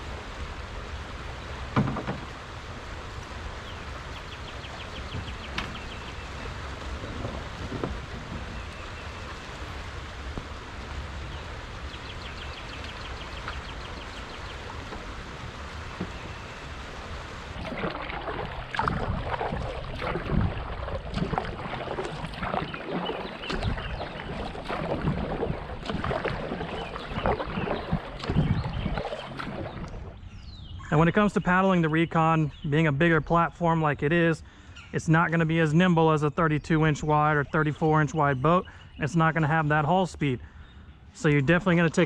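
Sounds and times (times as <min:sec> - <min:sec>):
paddle splashing water: 0:00.0 - 0:30.3
water noise: 0:00.0 - 0:34.3, 0:35.0 - 0:40.4, 0:41.1 - 0:42.0
wind: 0:00.0 - 0:42.0.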